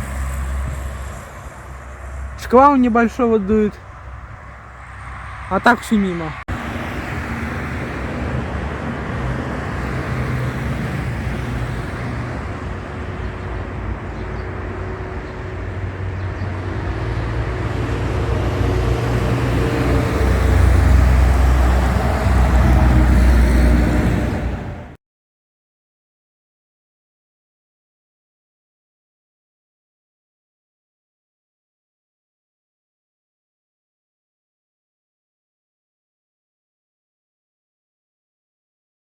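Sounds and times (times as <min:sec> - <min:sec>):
gusting wind on microphone: 0:00.0 - 0:25.0
road traffic: 0:00.0 - 0:25.0
vehicle engine hum: 0:00.0 - 0:25.0.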